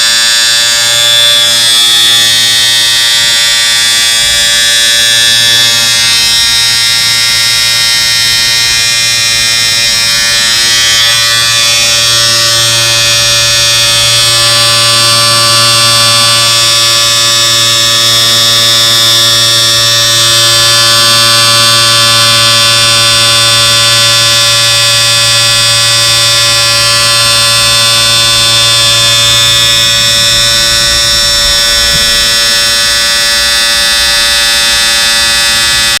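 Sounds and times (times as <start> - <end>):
electric shaver buzzing: 0.0 - 36.0.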